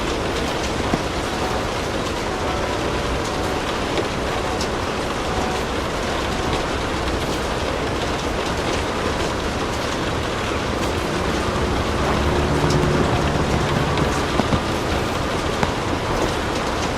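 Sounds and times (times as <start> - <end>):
steady rain hiss: 0.0 - 16.9
low rumble: 10.2 - 16.6.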